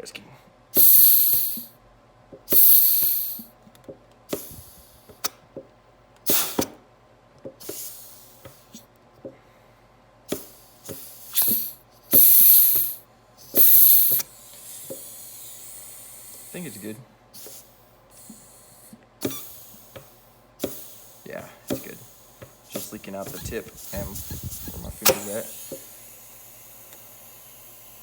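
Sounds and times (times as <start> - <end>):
air leaking hiss: 0.8 - 1.7, 2.5 - 3.5, 4.3 - 5.1, 10.3 - 16.5, 19.3 - 25.9
compressed air blasts: 0.8 - 1.7, 2.5 - 3.4, 4.3 - 5.1, 6.3 - 6.7, 10.3 - 16.5, 20.6 - 25.8.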